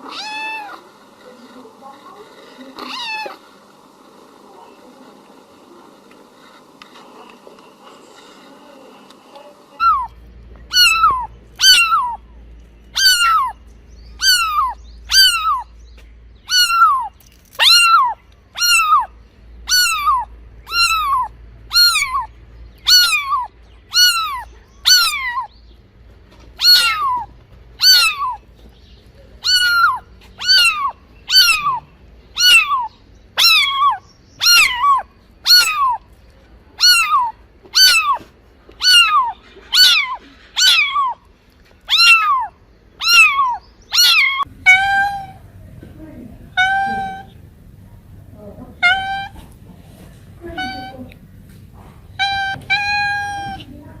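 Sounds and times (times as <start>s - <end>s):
cat meowing: 0.0s - 1.0s, 2.8s - 3.5s, 9.7s - 12.2s, 12.9s - 13.6s, 14.2s - 15.7s, 16.5s - 19.1s, 19.7s - 25.5s, 26.5s - 28.5s, 29.4s - 36.1s, 36.8s - 45.6s, 46.5s - 47.6s, 48.6s - 49.6s, 50.4s - 51.2s, 52.1s - 54.0s.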